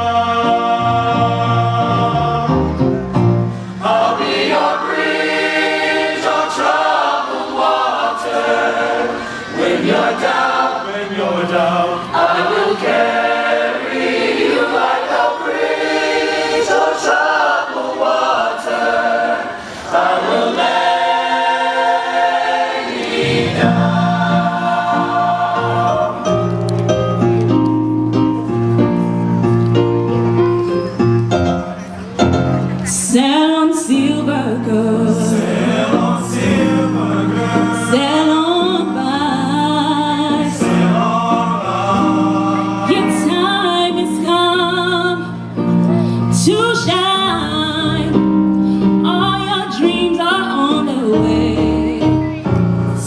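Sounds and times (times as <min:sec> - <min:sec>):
choir singing: 0:00.0 - 0:03.1, 0:03.7 - 0:26.7, 0:33.1 - 0:45.9.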